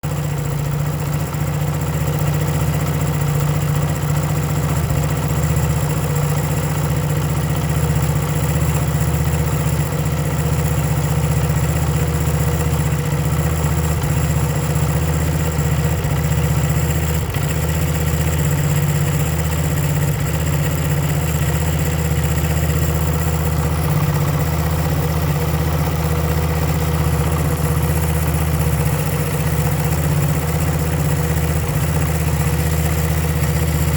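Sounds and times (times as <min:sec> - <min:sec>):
motorcycle engine idling: 0:00.0 - 0:33.9.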